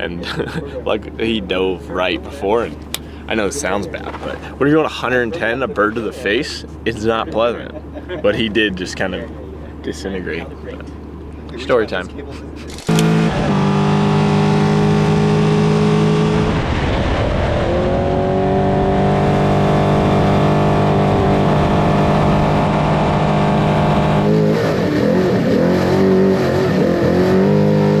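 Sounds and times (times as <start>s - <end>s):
truck engine revving: 9.8s - 28.0s.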